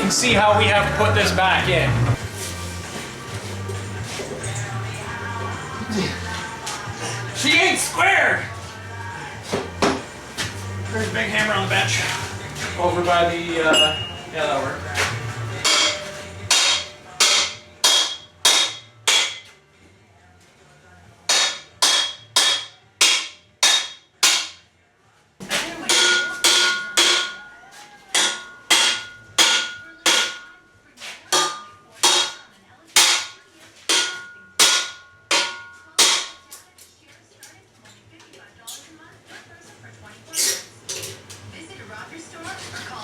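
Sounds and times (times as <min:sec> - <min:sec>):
hammer striking steel: 0:13.7 - 0:14.2, 0:15.6 - 0:19.6, 0:21.3 - 0:24.6, 0:25.8 - 0:27.5, 0:28.1 - 0:30.6, 0:31.3 - 0:36.6.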